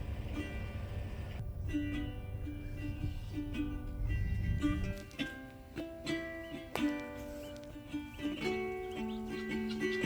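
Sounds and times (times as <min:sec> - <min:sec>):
steady low rumble: 0:00.0 - 0:05.0
plucked strings music: 0:00.0 - 0:10.0.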